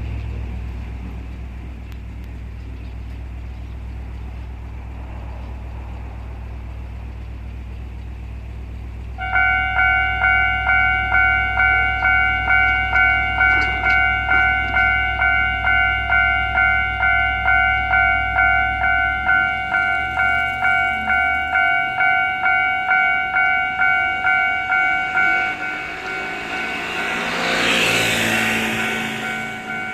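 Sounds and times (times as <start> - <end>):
level crossing warning bell: 9.2 - 29.9.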